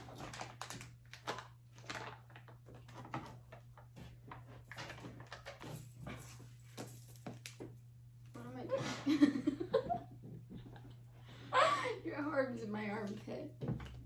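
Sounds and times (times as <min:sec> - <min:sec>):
handling knocks and rustles: 0:02.6 - 0:07.8.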